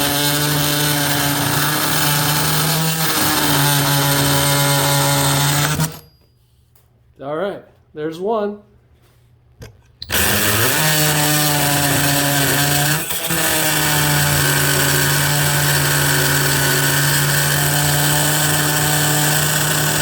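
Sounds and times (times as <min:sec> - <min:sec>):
multi-tool cutting metal: 0:00.0 - 0:06.1, 0:10.0 - 0:20.0.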